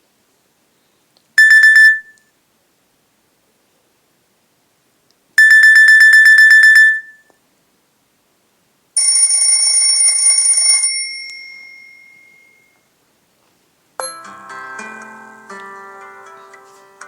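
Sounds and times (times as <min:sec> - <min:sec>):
fast beeping phone tone: 0:01.4 - 0:02.2, 0:05.4 - 0:07.2
high ringing tone: 0:01.4 - 0:02.2, 0:05.4 - 0:07.3, 0:09.0 - 0:12.9, 0:14.0 - 0:14.4.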